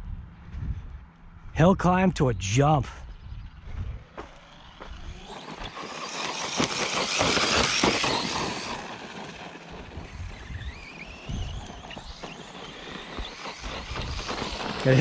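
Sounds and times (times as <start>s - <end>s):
electric motor whine: 3.4s - 15.0s
tyres churning dirt: 4.2s - 15.0s.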